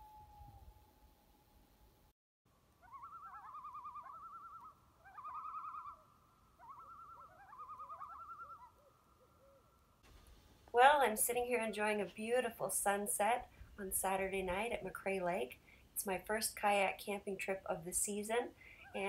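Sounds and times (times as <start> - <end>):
loon tremolo call: 2.8 - 9.6.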